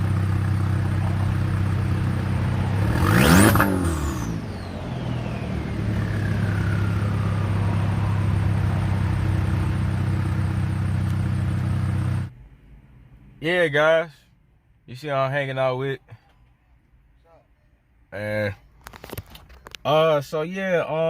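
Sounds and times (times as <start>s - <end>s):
engine revving: 0.0s - 12.3s
car engine droning: 0.0s - 13.4s
high falling whistle: 3.0s - 9.9s.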